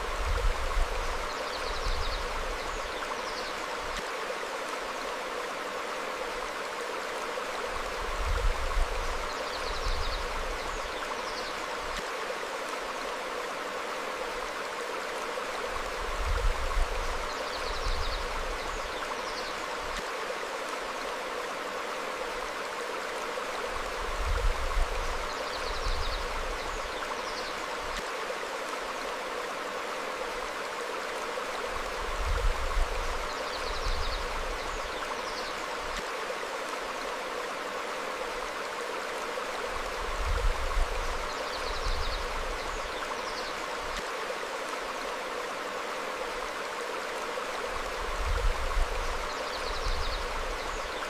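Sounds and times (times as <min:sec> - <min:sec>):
low rumbling water surges: 0:00.0 - 0:51.0
stream flowing over rocks: 0:00.0 - 0:51.0.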